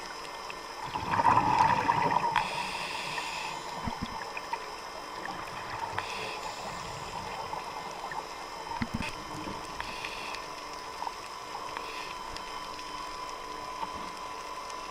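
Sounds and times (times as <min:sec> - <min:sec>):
faint steady tone: 0:00.0 - 0:14.9
underwater hiss: 0:01.0 - 0:04.1, 0:05.5 - 0:08.2, 0:09.6 - 0:11.0, 0:11.7 - 0:12.4
small clicks: 0:08.1 - 0:14.9.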